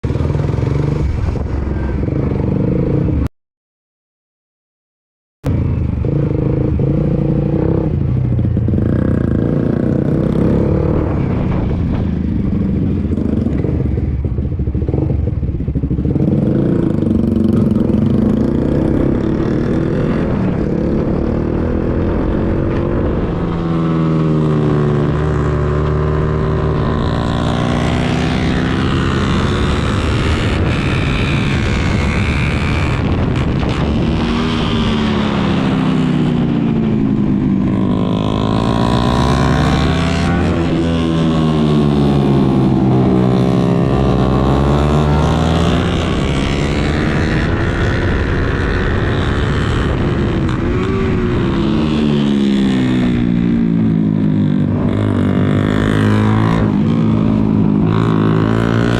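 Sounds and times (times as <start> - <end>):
wind noise: 0.1 - 3.2, 5.4 - 58.9
motorcycle engine revving: 5.5 - 58.9.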